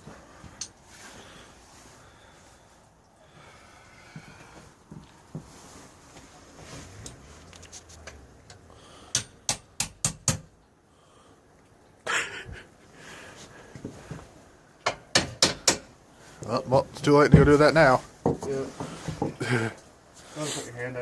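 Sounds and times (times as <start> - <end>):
hand tool tapping metal: 8.0 - 10.5, 14.8 - 15.9.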